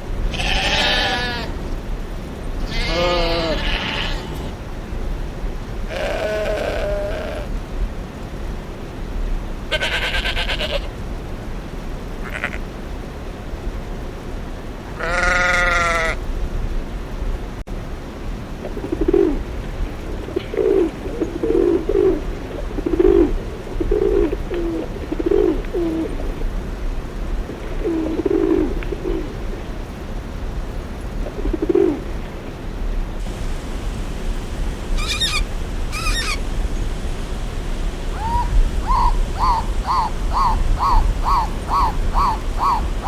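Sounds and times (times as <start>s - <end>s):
bird cooing: 18.8s - 19.4s, 20.4s - 26.2s, 27.8s - 29.3s, 31.4s - 32.0s, 33.2s - 43.0s
high bird calls: 33.2s - 43.0s
quick high bird notes: 33.3s - 37.4s.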